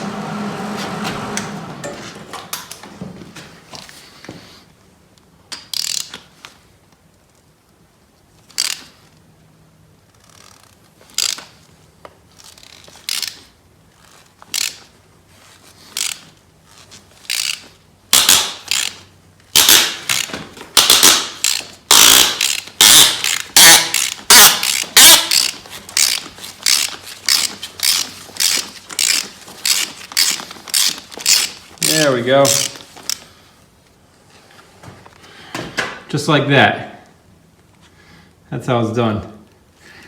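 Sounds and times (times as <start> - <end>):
ratchet wrench clicking: 5.5 - 6.2, 8.5 - 9.0, 10.2 - 11.5, 12.4 - 14.8, 15.9 - 33.2.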